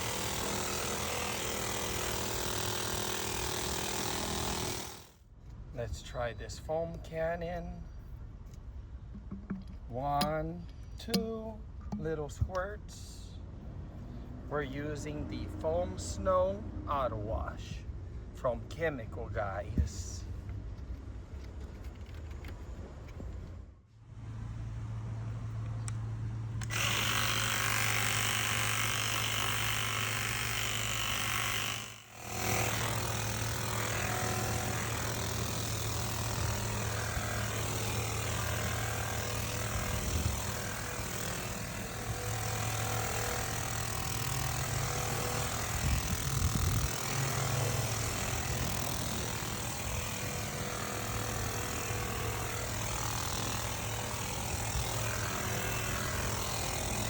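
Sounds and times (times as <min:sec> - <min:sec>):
pressure washer motor hum: 0:00.0 - 0:05.1, 0:26.6 - 0:57.0.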